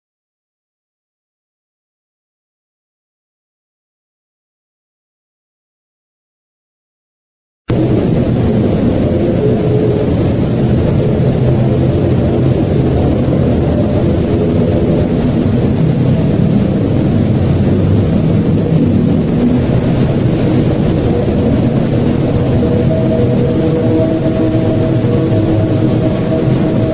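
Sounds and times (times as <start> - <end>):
low rumbling drone: 7.7 - 26.9.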